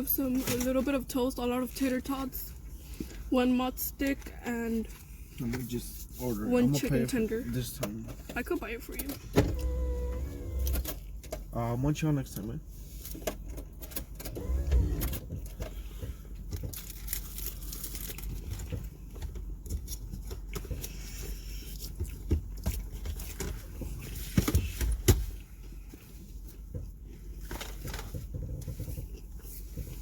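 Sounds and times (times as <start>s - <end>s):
low car rumble: 7.6s - 11.8s
food wrappers crinkling: 16.6s - 19.0s.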